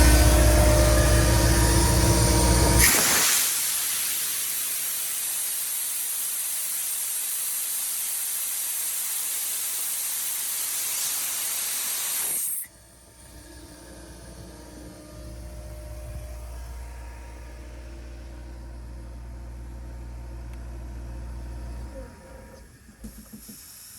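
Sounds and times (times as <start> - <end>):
diesel compressor engine running: 0.0 - 2.8
compressed air venting hiss: 2.8 - 12.7
faint hum: 12.7 - 22.8.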